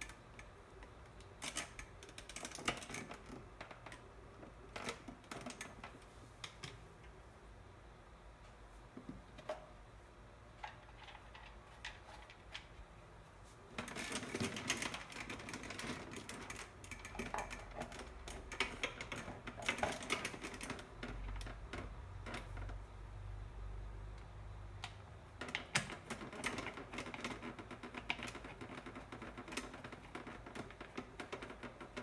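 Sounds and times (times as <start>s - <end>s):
plastic fan parts clicking: 0.0s - 7.2s, 13.8s - 22.8s, 24.2s - 32.0s.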